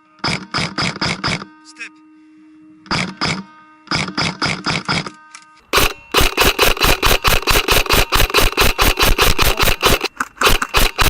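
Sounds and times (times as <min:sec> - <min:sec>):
airsoft guns firing full auto: 0:05.7 - 0:11.0.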